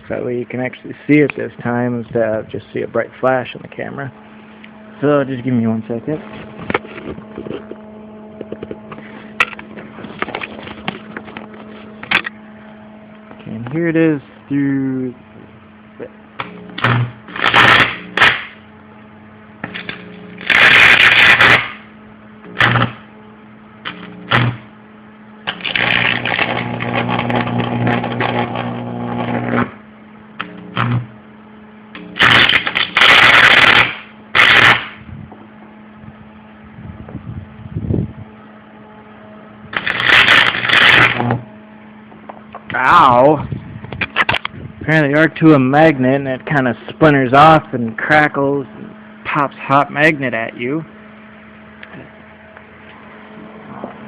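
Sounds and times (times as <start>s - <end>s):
electric arc buzzing and crackling: 0.0s - 18.8s, 19.5s - 35.1s, 39.6s - 53.1s
steady electrical hum: 0.0s - 54.0s
magnet crackling and popping: 32.0s - 35.0s.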